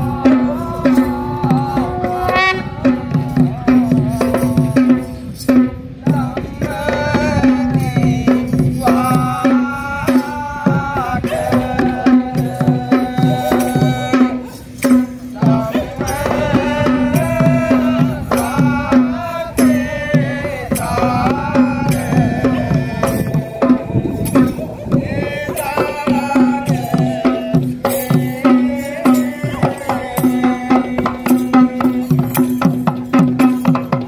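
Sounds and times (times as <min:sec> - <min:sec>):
hand drums playing: 0:00.0 - 0:34.0.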